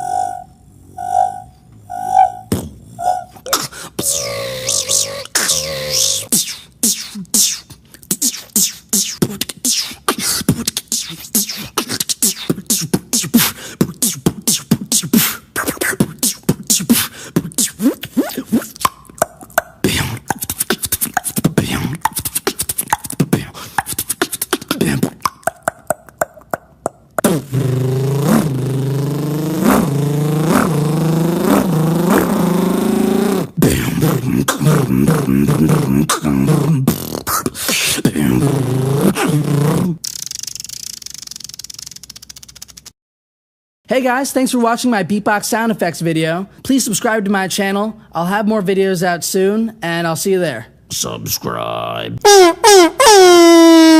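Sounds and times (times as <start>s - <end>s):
buzzing pitched vocal tone: 0.0s - 41.5s
beatboxing vocal percussion: 2.5s - 42.9s.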